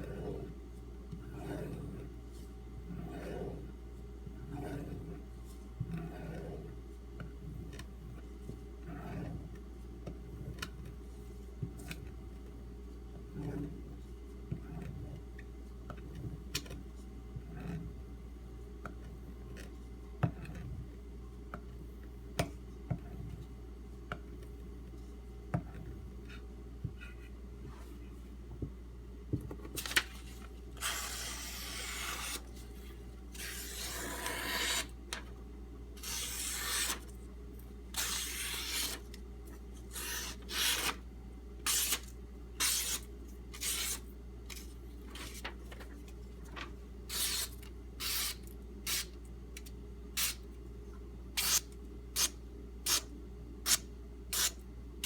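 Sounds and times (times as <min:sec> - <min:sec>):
knife rasping on whetstone: 0:33.4 - 0:34.9, 0:36.0 - 0:37.0.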